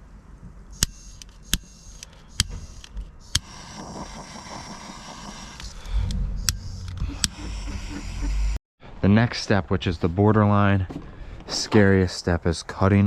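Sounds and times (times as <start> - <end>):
low rumble: 3.0 - 9.2.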